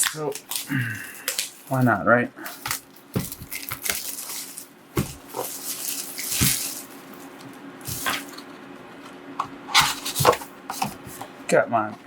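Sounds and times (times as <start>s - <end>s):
cardboard box rustling scrape: 9.7s - 11.3s.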